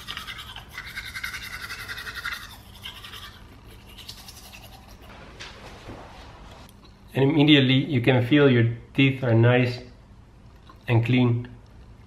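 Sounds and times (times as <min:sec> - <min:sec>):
toothbrush scrubbing teeth: 0:00.0 - 0:05.1.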